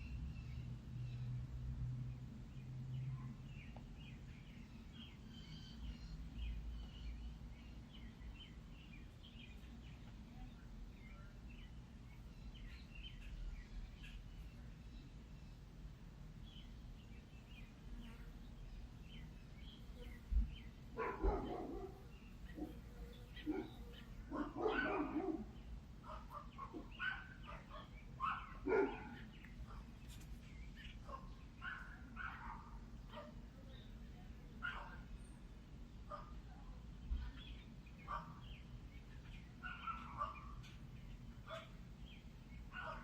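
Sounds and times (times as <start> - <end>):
birds chirping and twittering: 0.0 - 43.0
low steady background rumble: 0.0 - 43.0
dogs barking: 21.0 - 29.9, 31.0 - 33.4, 34.6 - 35.1, 36.1 - 36.4, 38.0 - 38.5, 39.6 - 40.7, 41.4 - 41.8, 42.7 - 43.0.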